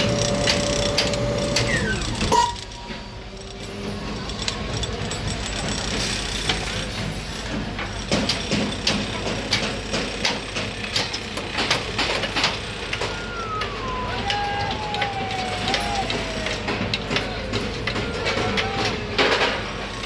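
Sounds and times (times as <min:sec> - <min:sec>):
tone gliding down in pitch: 0:13.0 - 0:16.9.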